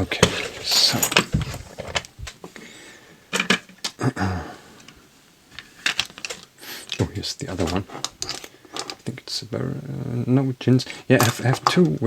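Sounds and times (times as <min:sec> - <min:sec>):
small hard objects clicking and knocking: 0:05.5 - 0:09.2, 0:11.0 - 0:12.0.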